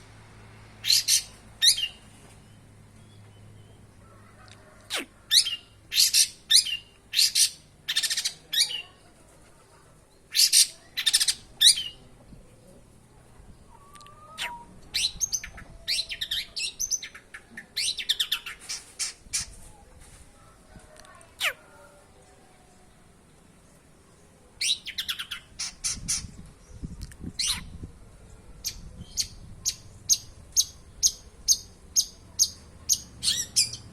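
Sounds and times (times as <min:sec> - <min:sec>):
bird harsh calls and chattering: 0:04.9 - 0:09.0, 0:10.2 - 0:12.1, 0:13.7 - 0:19.6, 0:24.6 - 0:27.8, 0:28.6 - 0:33.9.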